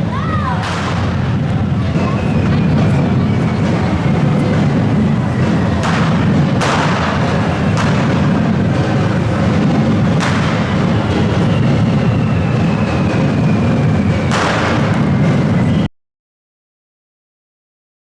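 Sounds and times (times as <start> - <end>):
fireworks and firecrackers: 0.0 - 15.9
sharp bangs: 0.0 - 15.9
falling whistle: 1.6 - 4.5, 10.5 - 15.9.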